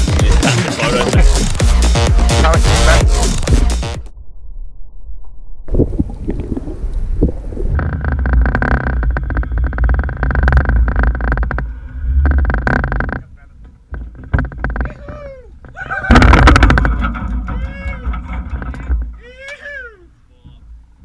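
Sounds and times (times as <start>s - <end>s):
sharp knocks and clicks: 7.8s - 19.2s.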